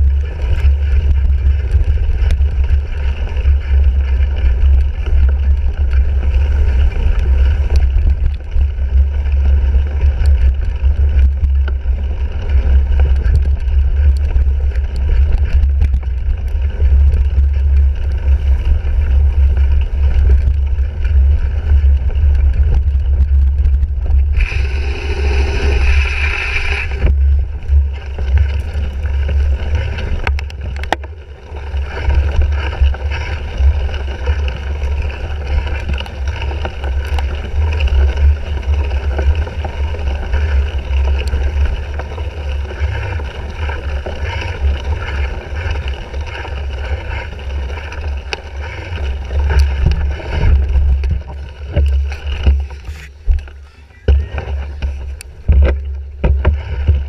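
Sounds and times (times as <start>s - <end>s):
wind and vibration rumble: 0.0s - 57.0s
rush of hiss: 24.4s - 27.0s.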